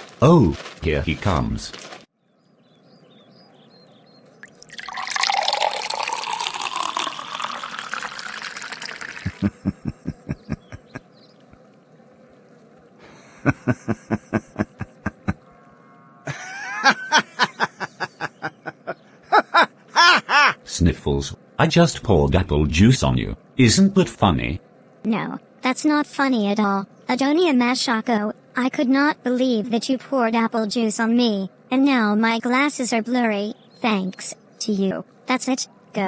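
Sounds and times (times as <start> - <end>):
liquid pouring and splashing: 4.4 - 9.5.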